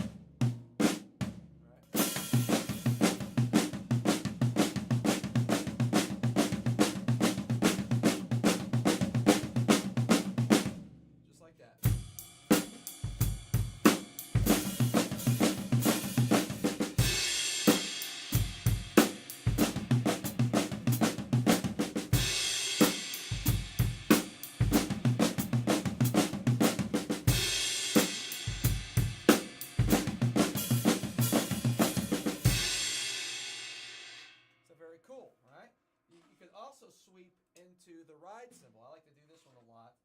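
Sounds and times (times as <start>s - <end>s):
bass drum: 0.0s - 1.5s, 2.2s - 10.9s, 13.0s - 32.9s
drum kit flam strokes: 2.0s - 10.8s, 11.9s - 33.9s.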